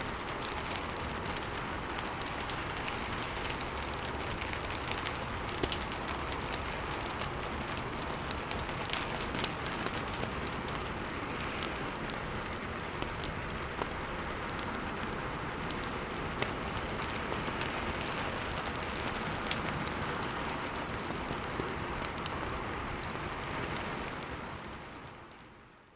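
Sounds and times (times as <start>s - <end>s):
fire crackling and popping: 0.0s - 25.9s
steady rain: 0.0s - 25.9s.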